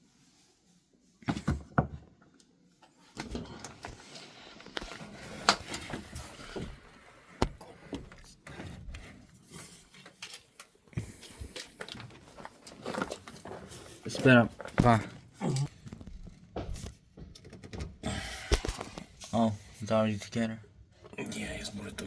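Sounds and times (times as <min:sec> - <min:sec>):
pipe fittings knocking and clicking: 0:16.0 - 0:18.0.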